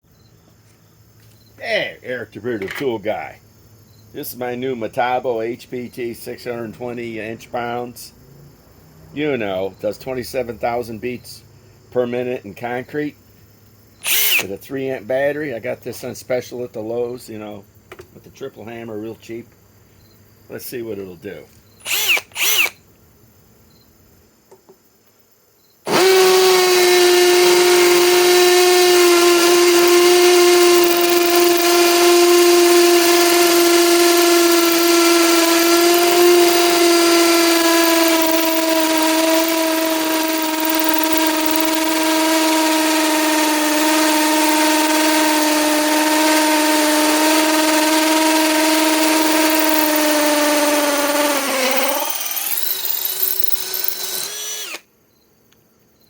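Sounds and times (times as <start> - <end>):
hammer drill whining: 14.0 - 14.5, 21.8 - 22.8, 25.9 - 54.9.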